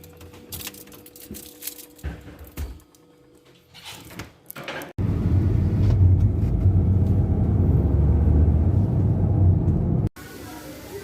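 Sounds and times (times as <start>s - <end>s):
loud low rumble: 5.0s - 10.1s.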